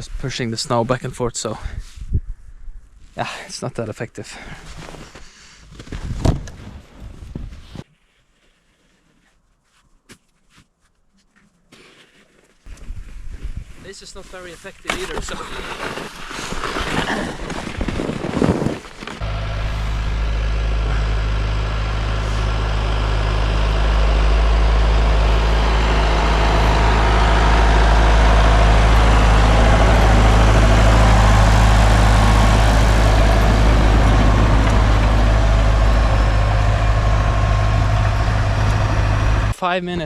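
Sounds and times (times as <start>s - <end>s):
engine running steadily: 19.1s - 39.6s.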